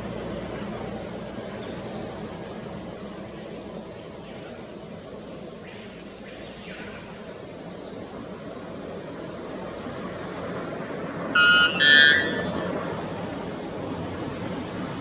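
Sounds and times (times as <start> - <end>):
steady background hiss: 0.0 - 15.0
bird two-note ringing call: 11.4 - 12.6.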